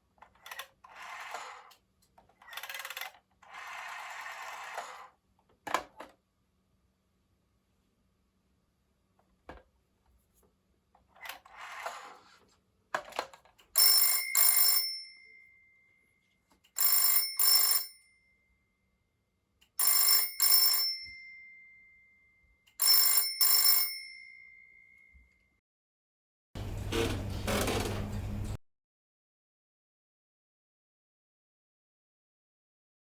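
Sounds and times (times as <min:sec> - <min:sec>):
telephone bell ringing: 0:13.8 - 0:18.6, 0:19.8 - 0:25.4.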